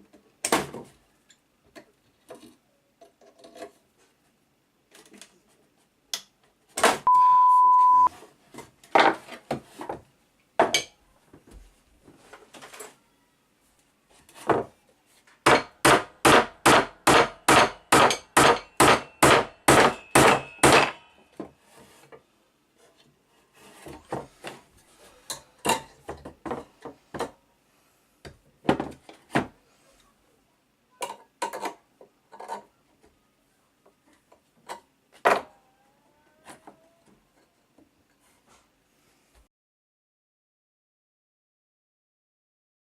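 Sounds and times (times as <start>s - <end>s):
hammer striking wood: 15.4s - 21.0s.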